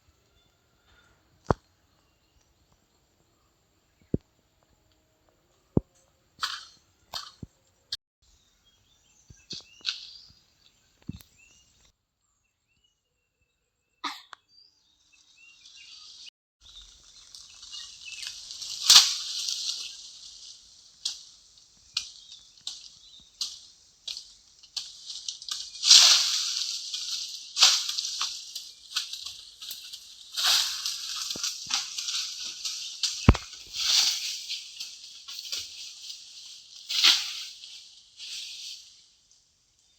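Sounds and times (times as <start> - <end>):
rustling hiss: 15.5 - 39.9.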